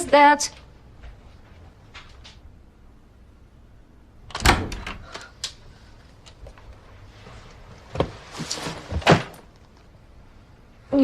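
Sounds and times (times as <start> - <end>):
door thudding shut: 4.3 - 5.0.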